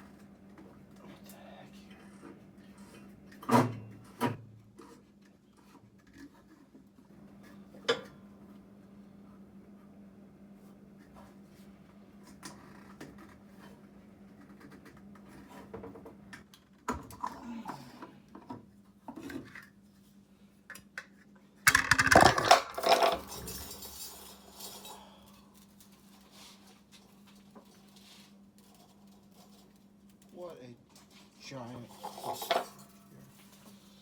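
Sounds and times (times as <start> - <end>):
metal tools clanking and rattling: 21.7 - 25.6, 31.9 - 33.1.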